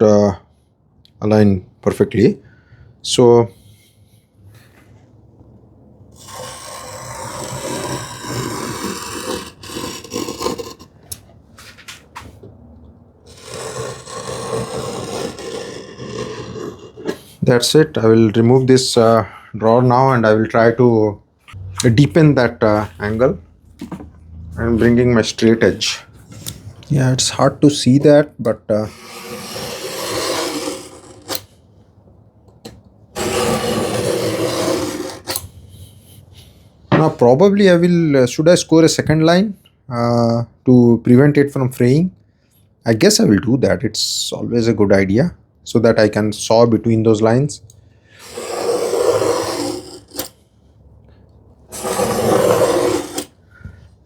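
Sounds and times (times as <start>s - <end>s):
knife scraping plywood: 6.2s - 12.3s, 13.2s - 17.4s, 28.8s - 31.6s, 33.2s - 35.6s, 48.2s - 50.4s, 51.7s - 53.4s.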